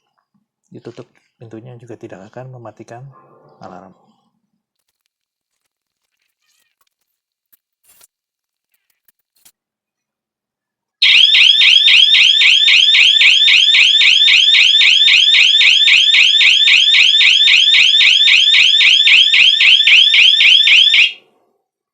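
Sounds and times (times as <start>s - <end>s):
door alarm siren whooping: 11.0s - 21.2s.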